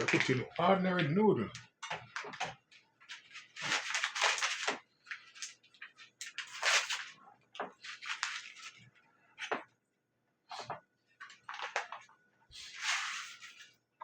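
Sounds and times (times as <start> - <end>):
noodle packet crinkling: 0.0 - 8.8, 11.3 - 12.0, 12.6 - 13.7.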